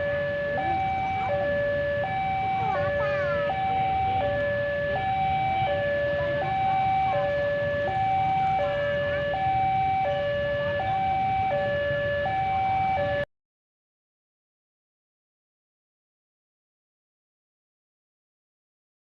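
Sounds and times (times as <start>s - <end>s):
level crossing two-tone alarm: 0.0s - 13.3s.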